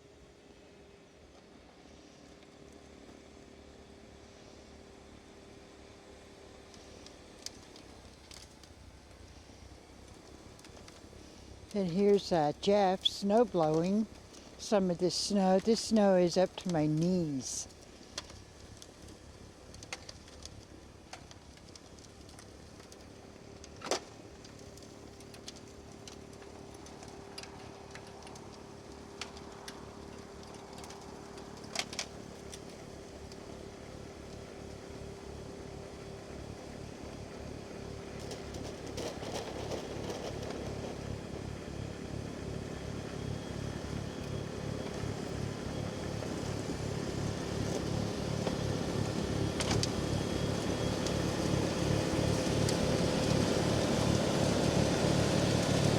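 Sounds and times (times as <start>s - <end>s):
tractor diesel engine running: 9.2s - 18.1s, 29.0s - 55.9s.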